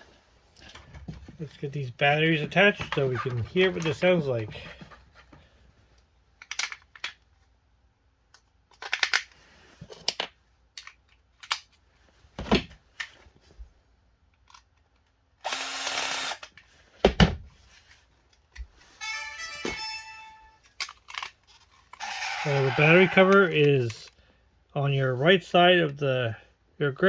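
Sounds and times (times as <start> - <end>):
plastic toy gun clicks and knocks: 6.4 - 7.2, 8.3 - 9.3, 10.0 - 11.8.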